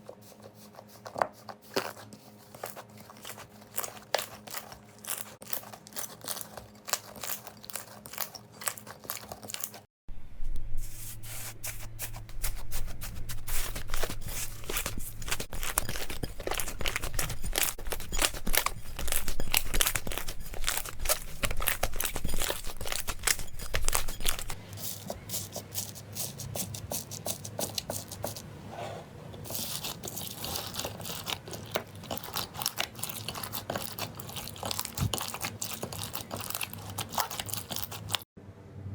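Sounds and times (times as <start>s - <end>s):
slime crackling and popping: 29.6s - 38.2s.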